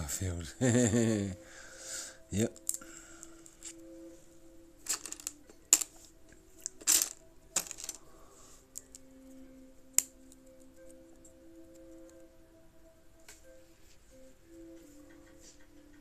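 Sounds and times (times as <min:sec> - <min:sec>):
faint steady hum: 0:00.0 - 0:16.0
plastic pieces clicking and clattering: 0:04.8 - 0:08.0, 0:08.7 - 0:09.1.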